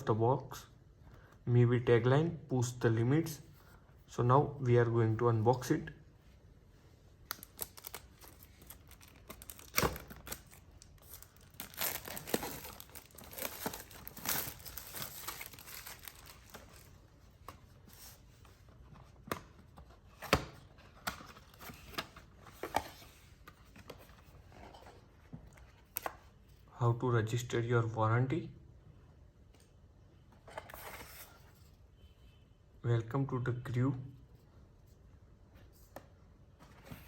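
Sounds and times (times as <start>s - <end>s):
packaging tearing and crinkling: 7.3s - 16.9s.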